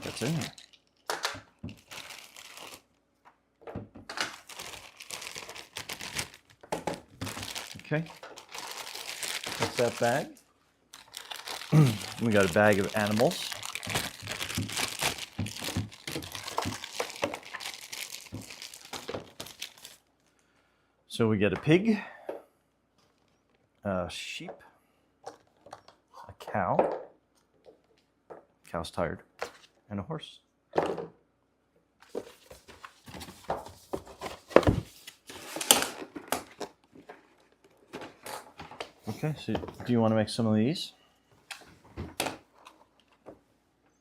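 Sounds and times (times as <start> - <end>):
packaging rustling: 0.0 - 3.0, 4.1 - 20.3
plastic bag crinkling: 0.0 - 3.0, 4.1 - 20.3.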